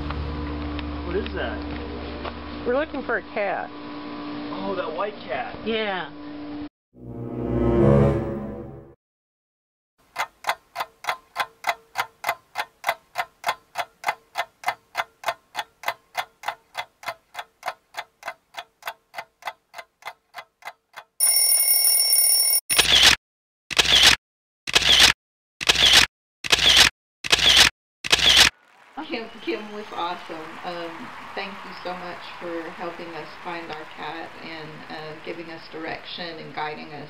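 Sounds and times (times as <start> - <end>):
clock ticking: 10.0 - 21.2
steady ringing tone: 21.2 - 22.8
loud sharp clicks: 23.0 - 28.5.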